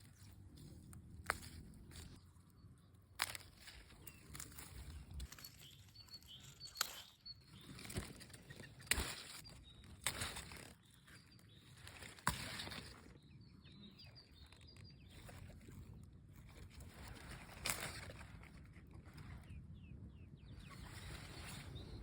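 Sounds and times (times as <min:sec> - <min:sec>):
stems snapping: 0:00.5 - 0:02.2, 0:03.2 - 0:10.8, 0:11.9 - 0:13.0, 0:17.5 - 0:18.2
leaves rustling: 0:03.2 - 0:11.0.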